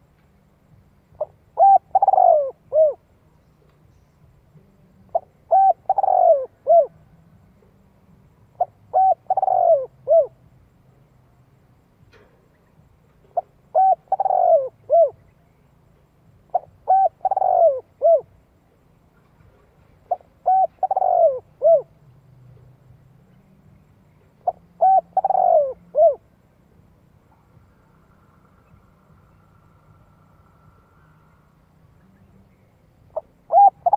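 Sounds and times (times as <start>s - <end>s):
dove cooing: 1.2s - 3.1s, 4.6s - 7.1s, 8.5s - 10.4s, 13.2s - 15.3s, 16.4s - 18.4s, 19.6s - 22.0s, 24.3s - 26.3s, 33.1s - 33.9s.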